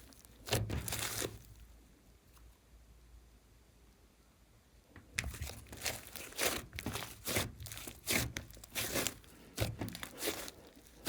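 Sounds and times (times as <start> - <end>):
slime crunchy squishing: 0.0 - 1.7, 5.2 - 11.0.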